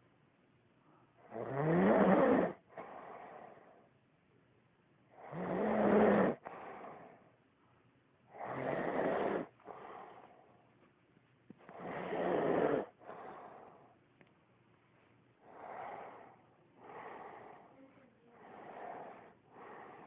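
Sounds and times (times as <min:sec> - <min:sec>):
man snoring: 0:01.3 - 0:02.9, 0:05.2 - 0:06.7, 0:08.3 - 0:09.6, 0:11.7 - 0:13.6.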